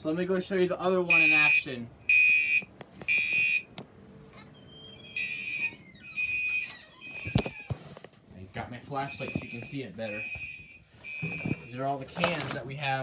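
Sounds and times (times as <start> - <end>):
fire alarm horn blasts: 1.1 - 3.7, 9.0 - 11.7.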